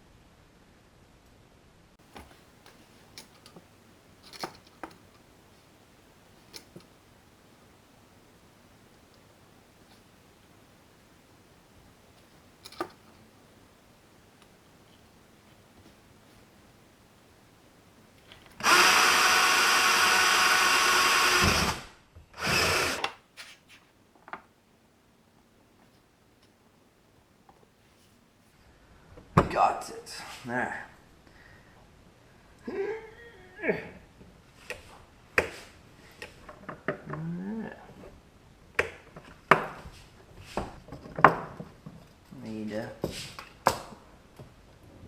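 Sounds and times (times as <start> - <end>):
plastic and metal parts clicking: 12.6 - 13.2
power drill drilling: 18.6 - 23.1.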